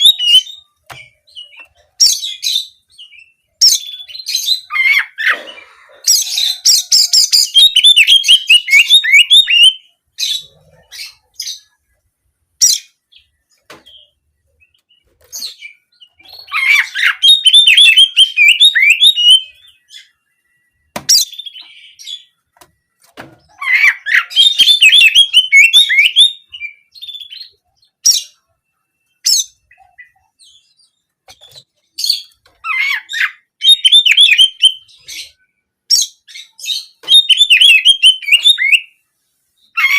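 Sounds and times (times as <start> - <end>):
bird chirps: 0.0 - 12.0, 12.6 - 39.0.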